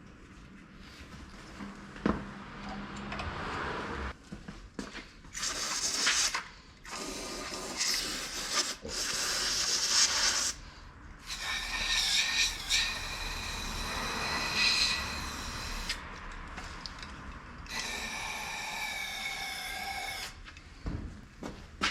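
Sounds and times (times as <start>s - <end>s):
power tool whirring: 11.3s - 16.0s, 17.7s - 20.4s.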